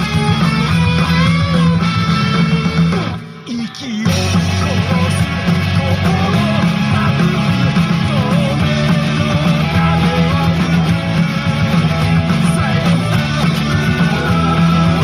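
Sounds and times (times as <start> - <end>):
punk rock music: 0.0 - 15.0.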